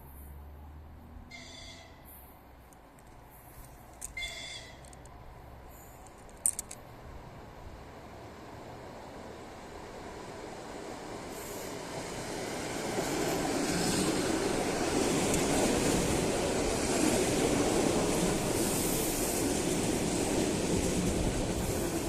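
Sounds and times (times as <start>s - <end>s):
train wheels rumbling on rails: 9.1s - 22.0s.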